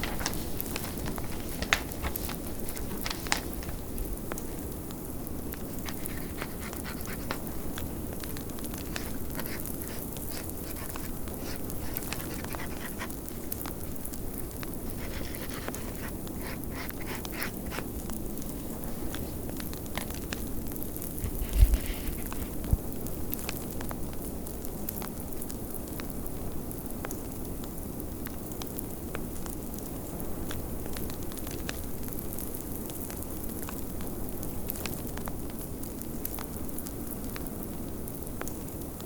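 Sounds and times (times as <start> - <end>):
fireplace crackling and popping: 0.0 - 23.8.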